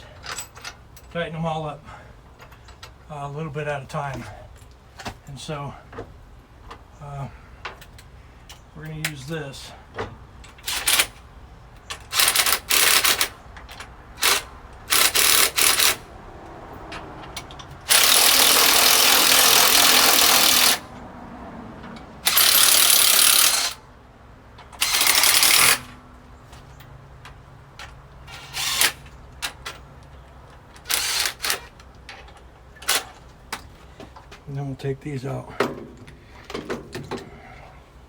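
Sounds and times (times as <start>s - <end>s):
impact wrench running bolts: 10.5s - 11.2s, 11.9s - 16.0s, 17.4s - 20.9s, 22.2s - 23.8s, 24.6s - 26.0s, 27.8s - 29.9s, 30.6s - 33.6s.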